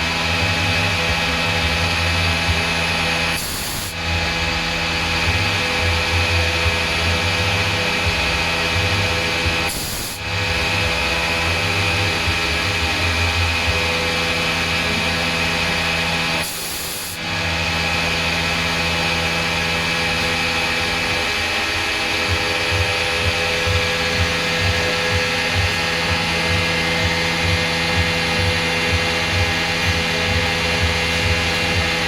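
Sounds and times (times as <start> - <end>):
low pulse: 0.0 - 16.4
cnc machine whirring: 0.0 - 32.0.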